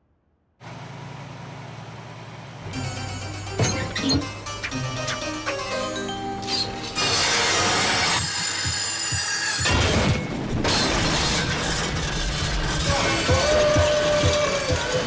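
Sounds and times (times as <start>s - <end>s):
background music: 2.7s - 11.1s, 12.2s - 15.0s.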